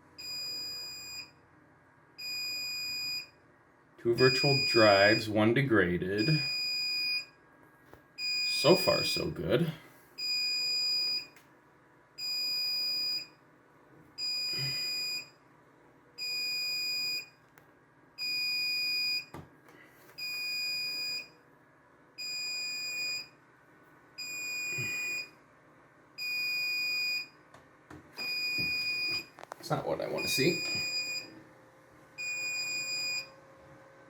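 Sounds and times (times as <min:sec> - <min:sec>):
alarm beeping: 0:00.2 - 0:01.3, 0:02.2 - 0:03.3, 0:04.2 - 0:05.3, 0:06.2 - 0:07.3, 0:08.2 - 0:09.2, 0:10.2 - 0:11.4, 0:12.2 - 0:13.4, 0:14.2 - 0:15.3, 0:16.2 - 0:17.3, 0:18.2 - 0:19.3, 0:20.2 - 0:21.3, 0:22.2 - 0:23.3, 0:24.2 - 0:25.3, 0:26.2 - 0:27.4, 0:28.2 - 0:29.3, 0:30.2 - 0:31.4, 0:32.2 - 0:33.3.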